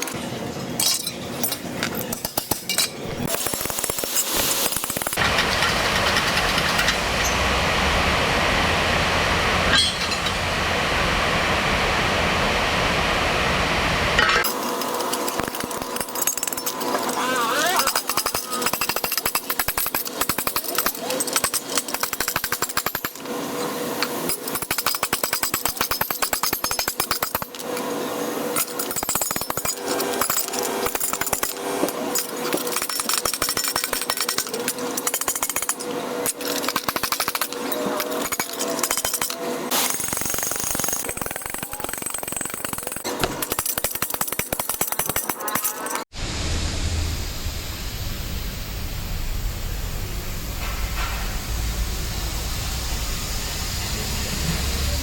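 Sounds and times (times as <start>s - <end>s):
power tool hammering: 2.1s - 11.6s, 14.2s - 46.1s.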